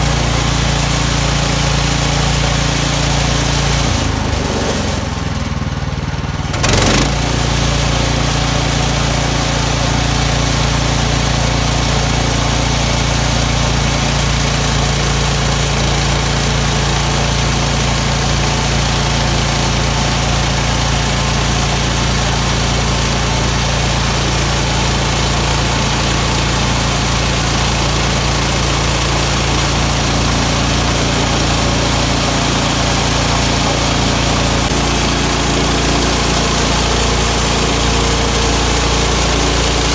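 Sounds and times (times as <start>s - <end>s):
sawmill engine running: 0.0s - 39.9s.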